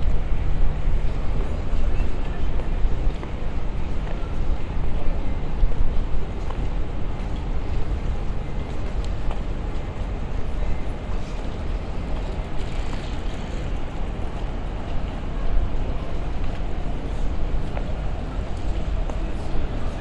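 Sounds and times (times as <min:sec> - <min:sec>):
traffic rumble: 0:00.0 - 0:19.9.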